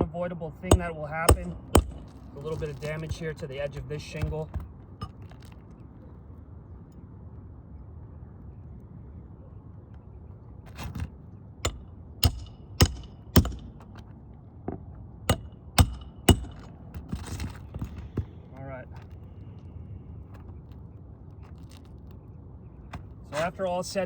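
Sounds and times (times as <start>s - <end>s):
hammer striking roofing nails: 0.7s - 2.2s, 11.7s - 13.9s, 15.3s - 18.3s.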